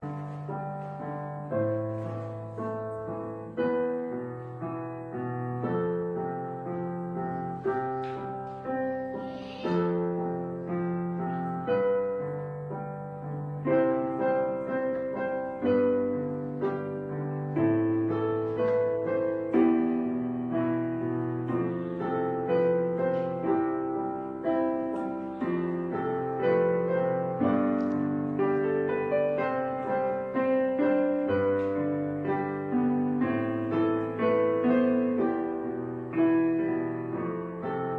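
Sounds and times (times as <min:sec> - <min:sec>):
gentle piano music: 0:00.0 - 0:37.9.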